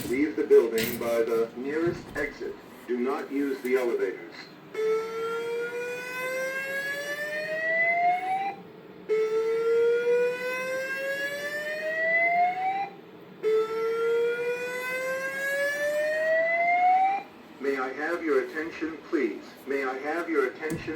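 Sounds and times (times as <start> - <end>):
fire alarm whoop tone: 4.7 - 17.4.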